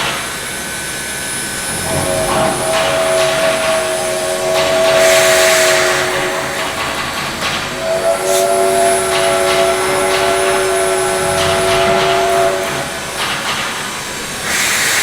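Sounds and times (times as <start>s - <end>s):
train rumbling: 0.0s - 15.0s
air hiss: 1.4s - 15.0s
locomotive air horn: 1.6s - 13.4s.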